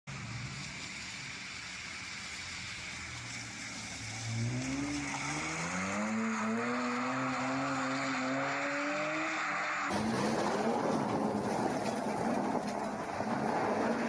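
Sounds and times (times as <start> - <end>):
car engine revving: 3.2 - 14.0.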